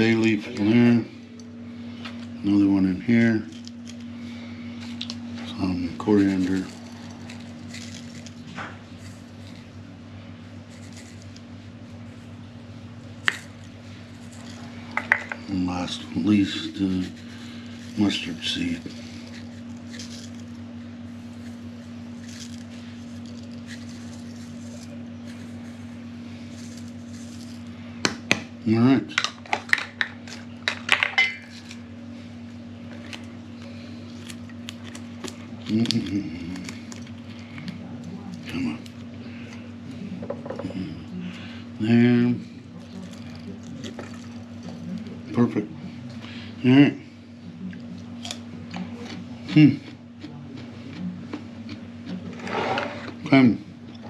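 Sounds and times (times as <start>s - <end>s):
steady low hum: 0.0s - 54.0s
seeds rustling and tapping in jars: 4.8s - 9.7s.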